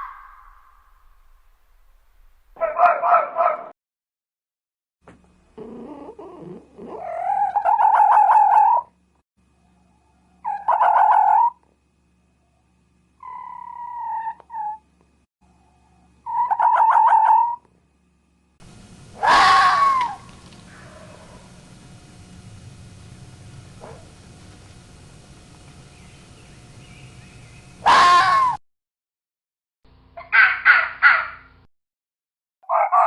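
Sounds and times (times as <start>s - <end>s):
fox crying: 5.6s - 8.9s, 10.4s - 11.6s, 13.2s - 14.8s, 16.2s - 17.6s, 19.2s - 21.1s, 27.8s - 28.6s, 30.2s - 31.4s.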